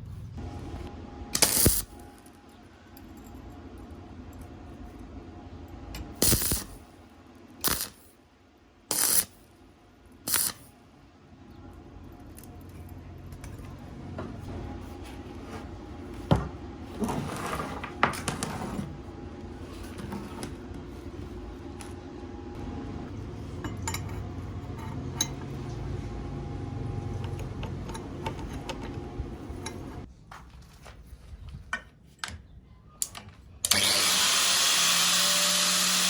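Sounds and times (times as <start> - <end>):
metallic scrapes and clanks: 23.2 - 26.1, 26.9 - 30.1.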